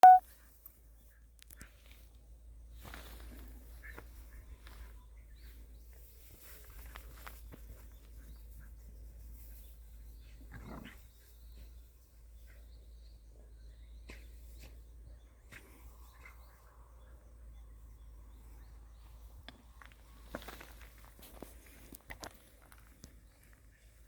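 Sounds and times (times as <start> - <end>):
soft rustles and clicks: 5.6 - 9.8.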